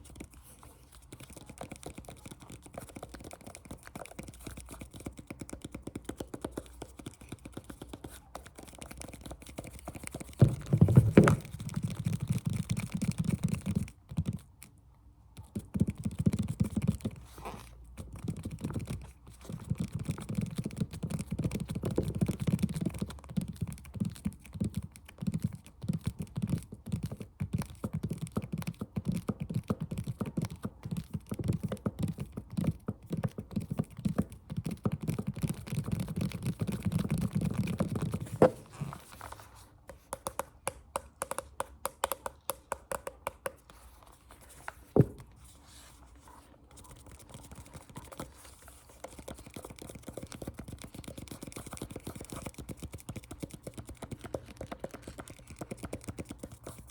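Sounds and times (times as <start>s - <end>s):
fingers tapping: 40.0s - 43.6s.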